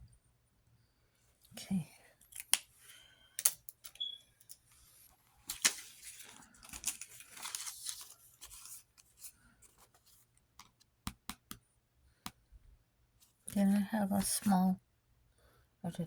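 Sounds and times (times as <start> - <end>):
paper rustling and crinkling: 4.7 - 10.8.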